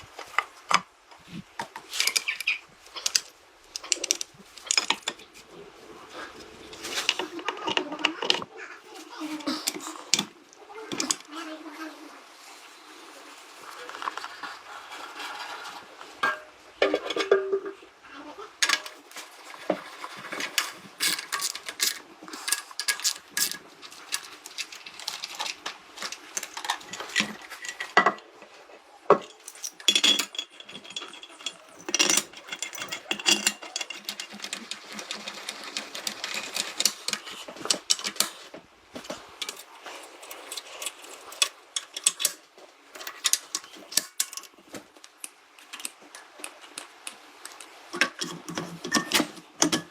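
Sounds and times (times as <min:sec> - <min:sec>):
hand tools tapping on metal: 0:01.6 - 0:05.4, 0:19.6 - 0:28.3, 0:29.1 - 0:49.9.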